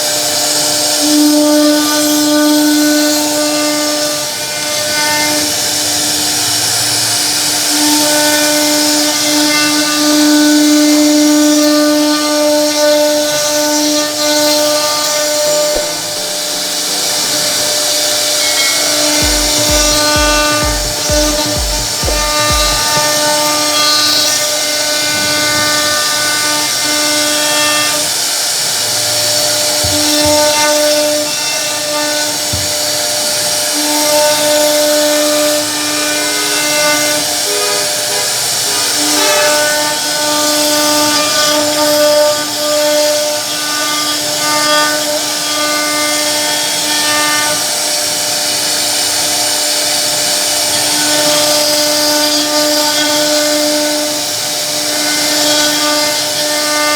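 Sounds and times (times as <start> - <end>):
router bit chipping wood: 0.0 - 56.9
router spindle whining: 0.0 - 56.9.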